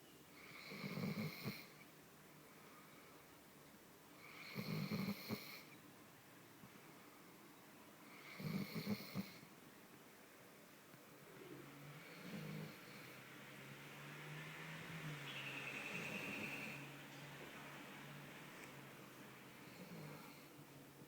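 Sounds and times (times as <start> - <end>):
dog snoring: 0.4 - 1.8, 4.2 - 5.8, 8.1 - 9.5, 11.6 - 13.4, 15.7 - 16.9, 19.6 - 20.5.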